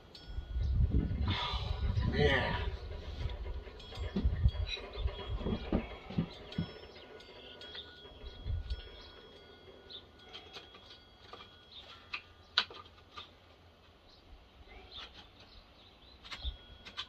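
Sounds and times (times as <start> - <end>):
faint birds chirping: 0.3 - 17.0.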